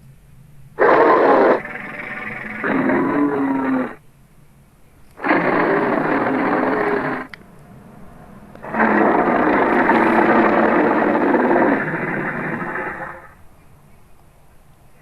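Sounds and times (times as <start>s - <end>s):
creature calls: 0.8s - 4.0s, 5.2s - 7.3s, 8.6s - 13.4s.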